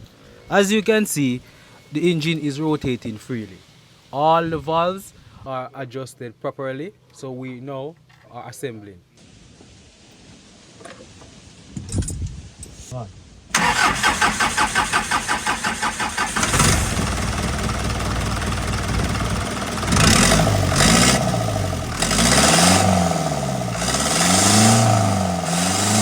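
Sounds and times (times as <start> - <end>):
diesel engine cranking on starter: 13.5 - 26.0
diesel engine revving: 13.6 - 26.0.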